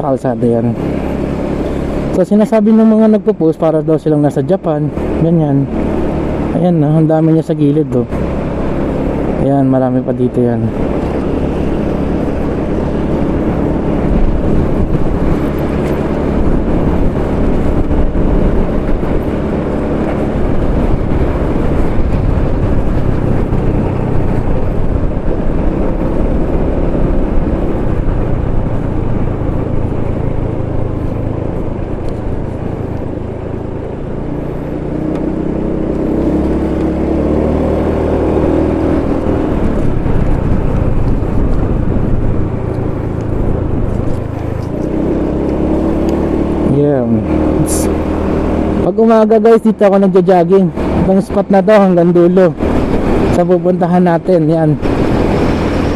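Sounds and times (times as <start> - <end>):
motorcycle engine rumbling: 0.0 - 55.9.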